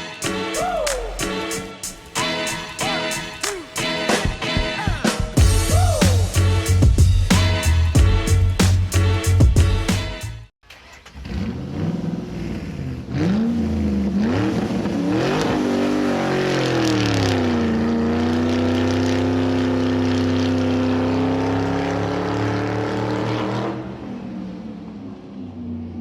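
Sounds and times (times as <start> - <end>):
car engine revving: 10.8 - 26.0.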